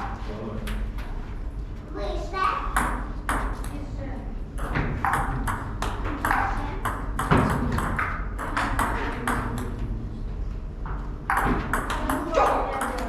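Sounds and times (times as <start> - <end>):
table tennis ball hits: 2.8 - 3.8, 4.6 - 9.9, 11.3 - 13.0.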